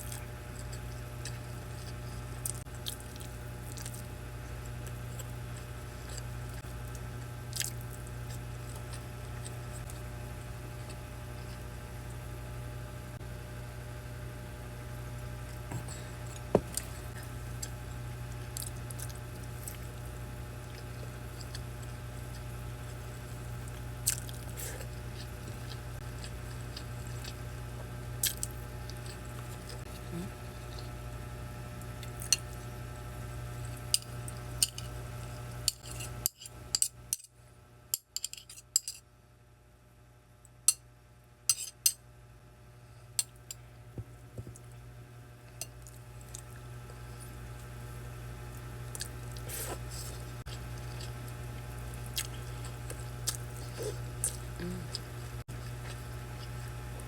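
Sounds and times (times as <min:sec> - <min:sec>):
chewing: 0:00.0 - 0:11.7, 0:15.5 - 0:27.6, 0:45.5 - 0:47.8, 0:48.4 - 0:57.0
steady low hum: 0:00.0 - 0:57.0.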